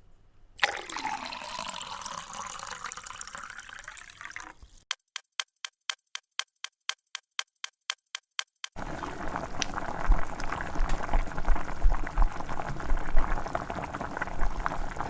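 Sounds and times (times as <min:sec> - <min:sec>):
water filling a container: 0:00.6 - 0:04.8
fast sharp clicks: 0:04.9 - 0:08.8.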